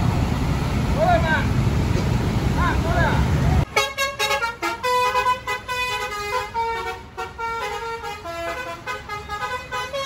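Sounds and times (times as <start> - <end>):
bus horn playing a tune: 3.7 - 10.0.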